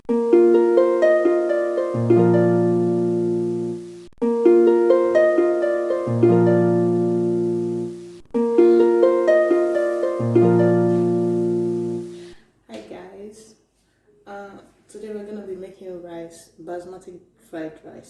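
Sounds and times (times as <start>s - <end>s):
plucked-string melody loop: 0.0s - 12.3s.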